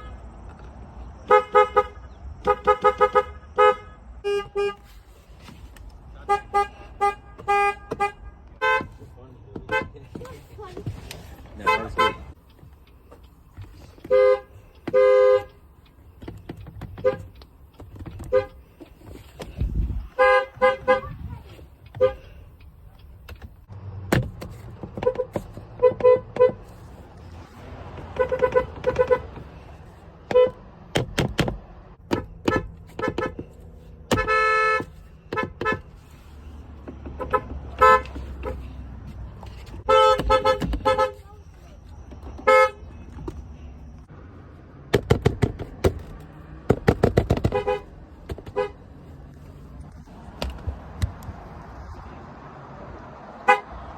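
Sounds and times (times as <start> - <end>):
car horn toots: 1.2 - 4.9, 6.2 - 9.0, 11.6 - 12.4, 14.0 - 15.6, 17.0 - 17.4, 18.2 - 18.6, 20.0 - 22.3, 25.0 - 26.6, 28.0 - 29.5, 30.2 - 30.6, 32.1 - 33.4, 34.1 - 35.9, 37.1 - 38.8, 39.8 - 41.4, 42.3 - 43.1, 47.4 - 48.8, 53.4 - 53.8.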